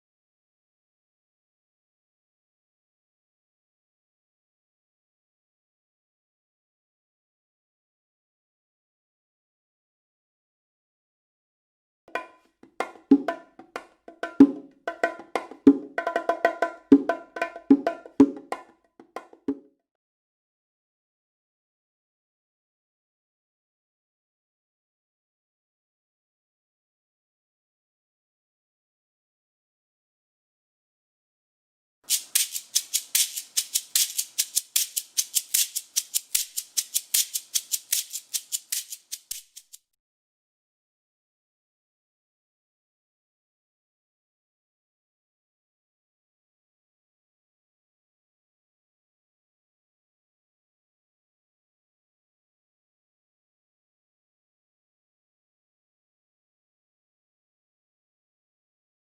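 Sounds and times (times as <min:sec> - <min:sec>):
dry rattle shaken rhythmically: 0:32.1 - 0:39.9.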